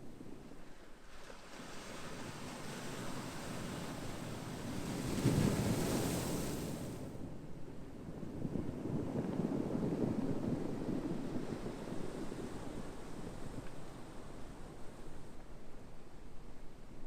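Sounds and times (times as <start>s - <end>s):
ocean wave breaking: 3.2s - 7.0s.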